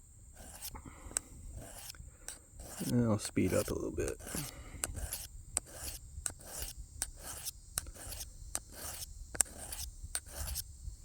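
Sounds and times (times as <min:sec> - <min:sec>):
knife rasping on sharpening file: 0:00.4 - 0:10.6.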